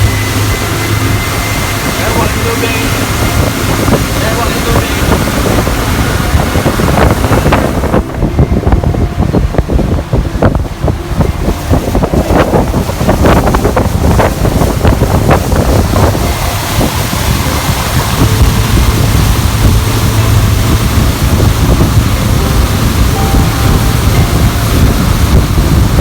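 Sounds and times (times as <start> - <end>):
sea water rushing and splashing: 0.0 - 26.0
wind buffeting microphone: 0.0 - 26.0.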